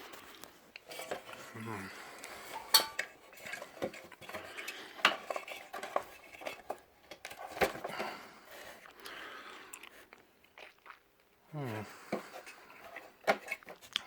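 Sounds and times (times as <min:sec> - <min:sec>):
metal tools clinking: 0:02.5 - 0:07.6.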